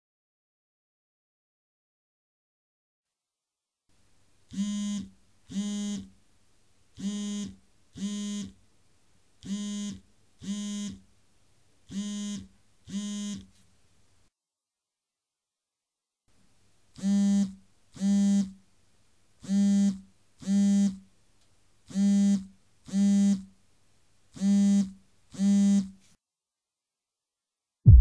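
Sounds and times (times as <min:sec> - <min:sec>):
electric buzzer short buzzes: 0:04.5 - 0:06.1, 0:07.0 - 0:08.6, 0:09.4 - 0:11.0, 0:11.9 - 0:13.5, 0:17.0 - 0:18.6, 0:19.4 - 0:21.0, 0:21.9 - 0:23.5, 0:24.4 - 0:26.0.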